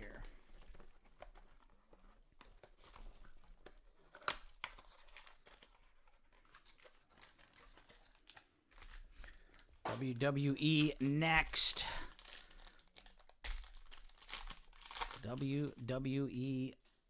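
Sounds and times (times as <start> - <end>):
wrapper tearing and crinkling: 2.4 - 9.7, 11.5 - 16.0.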